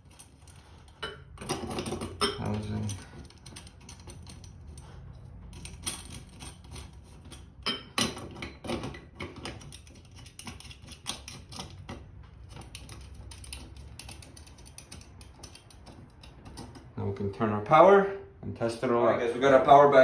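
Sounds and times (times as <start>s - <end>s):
lamp housing clicking and scraping: 0.0s - 17.0s.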